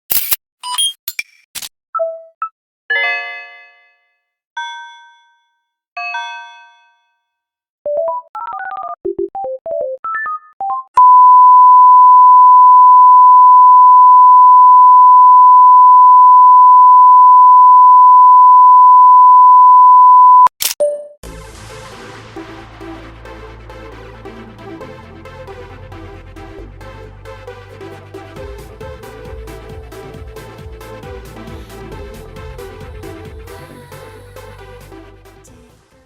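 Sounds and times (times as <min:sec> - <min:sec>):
loud steady single-pitched beep: 0:11.0 - 0:20.5
short beeps: 0:11.0 - 0:21.1.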